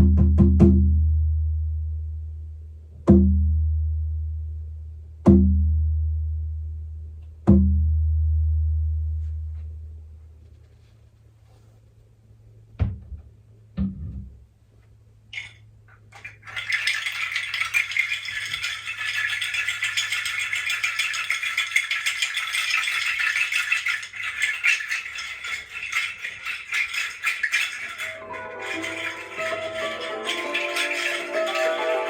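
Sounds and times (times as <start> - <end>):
low thumps: 12.7 - 14.5
hand rattle shaking: 15.4 - 32.0.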